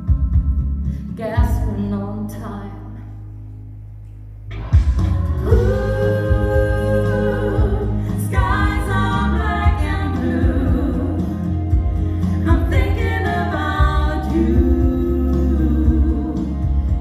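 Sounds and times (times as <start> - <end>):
steady bass accompaniment: 0.0 - 17.0
singers with long held notes: 5.0 - 17.0.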